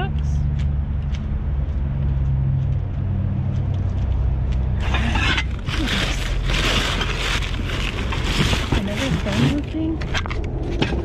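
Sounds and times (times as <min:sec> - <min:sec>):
plastic bags rustling: 0:04.8 - 0:10.2.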